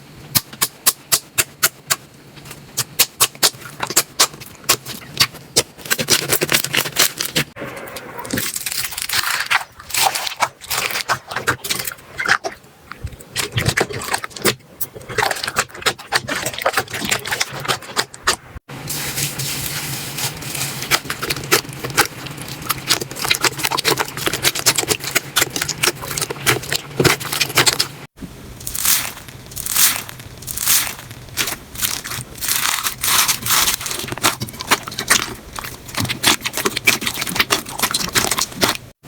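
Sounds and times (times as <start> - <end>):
slime squeezed by hand: 28.6 - 38.8.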